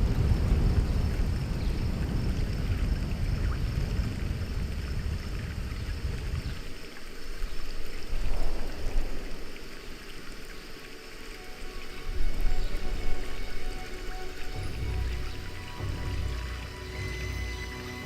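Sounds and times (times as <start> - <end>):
deep rumble: 0.0 - 6.7
water rushing and splashing: 0.0 - 18.0.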